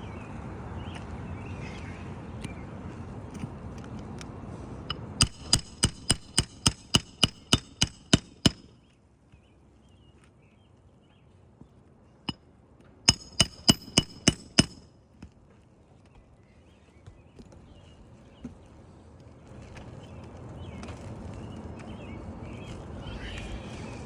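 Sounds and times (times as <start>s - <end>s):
hammer ringing on nails: 4.9s - 8.7s, 13.1s - 14.9s.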